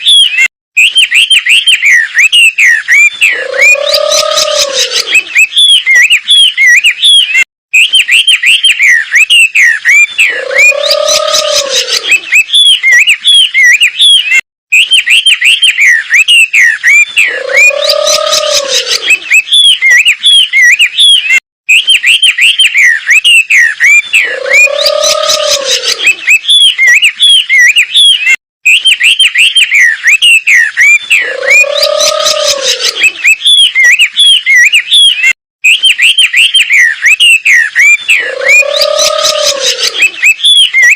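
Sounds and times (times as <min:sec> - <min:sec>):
bird chirping: 0:00.0 - 0:40.9
low arched hoot: 0:03.2 - 0:05.4, 0:10.2 - 0:12.4, 0:17.2 - 0:19.4, 0:24.2 - 0:26.3, 0:31.1 - 0:33.3, 0:38.1 - 0:40.3.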